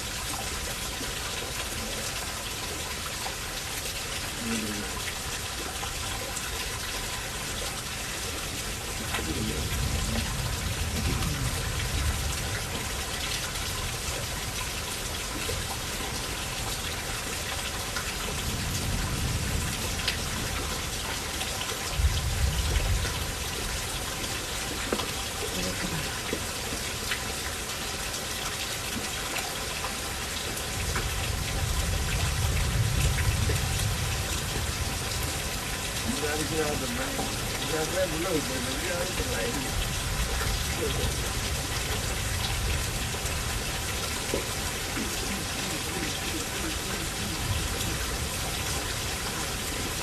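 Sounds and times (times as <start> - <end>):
steady rain falling: 0.0 - 50.0
low rumbles: 6.3 - 15.1.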